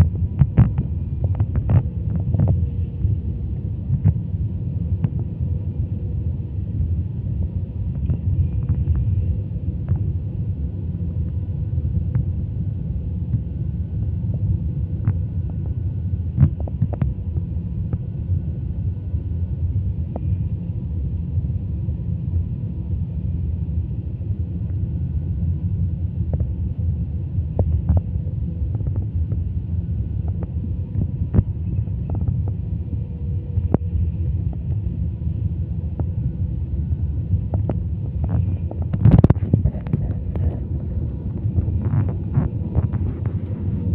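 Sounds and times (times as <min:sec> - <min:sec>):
jet engine cabin rumble: 0:00.0 - 0:43.9
faint clicks and rattles: 0:37.5 - 0:43.6.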